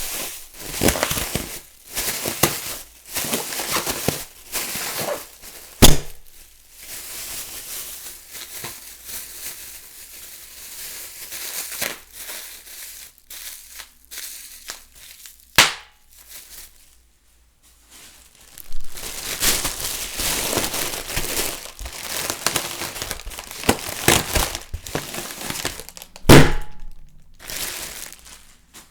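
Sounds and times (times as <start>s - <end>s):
plastic bag bursting pops: 0.0s - 6.6s, 15.5s - 16.4s, 18.4s - 28.9s
plastic bag crinkling: 0.0s - 17.1s, 17.7s - 28.9s.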